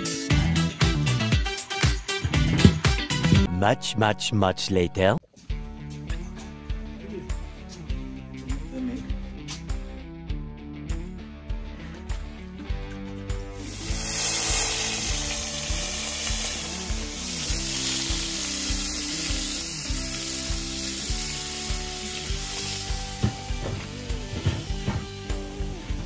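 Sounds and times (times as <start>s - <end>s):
background music: 0.0s - 26.0s
sizzling crackling hiss: 13.6s - 24.2s.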